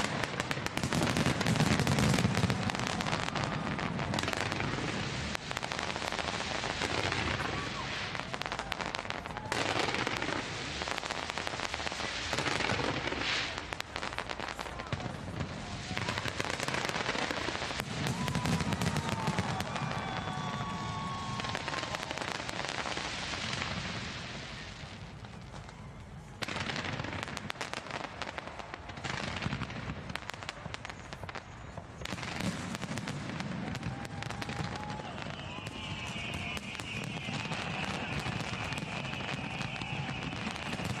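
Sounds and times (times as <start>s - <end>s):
fireworks crackling and popping: 0.0s - 41.0s.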